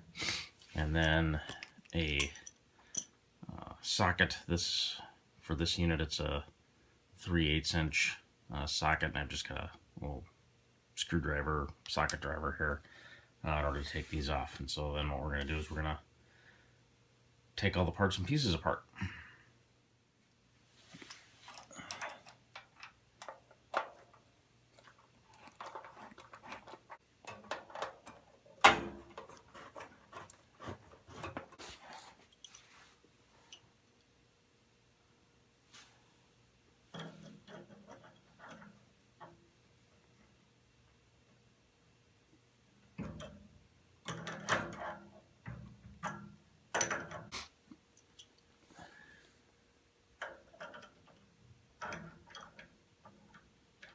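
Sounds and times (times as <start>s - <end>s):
rustling: 20.6s - 22.8s, 23.8s - 33.6s
metal parts and tools clattering: 21.0s - 32.6s.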